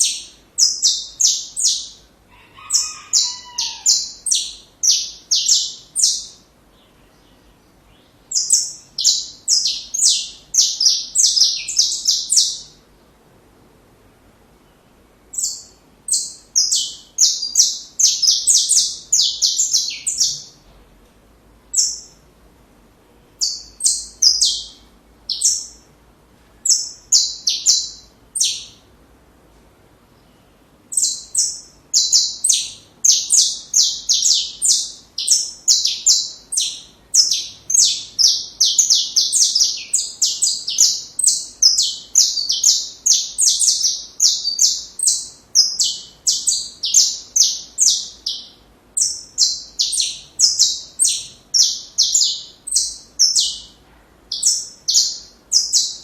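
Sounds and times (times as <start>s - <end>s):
finch singing trilled song: 0.0s - 2.1s, 2.7s - 12.8s, 15.3s - 20.6s, 21.7s - 22.2s, 23.4s - 25.9s, 26.6s - 28.9s, 30.9s - 56.0s.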